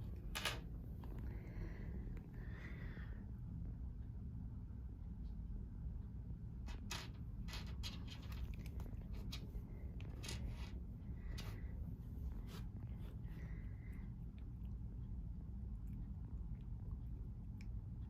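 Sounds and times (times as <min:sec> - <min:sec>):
steady low hum: 0:00.0 - 0:18.0
cats playing with toys: 0:06.7 - 0:11.7.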